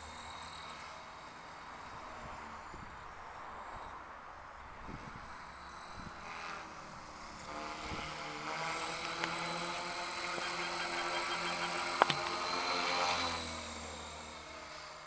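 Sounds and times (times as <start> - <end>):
high motor whine: 6.1 - 14.7
helicopter rotor buzz: 6.6 - 13.8.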